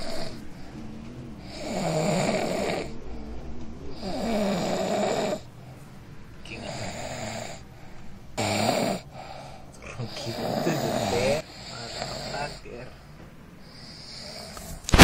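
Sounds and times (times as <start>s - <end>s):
man snoring: 0.0s - 3.0s, 3.9s - 5.5s, 6.5s - 7.6s, 8.4s - 12.9s.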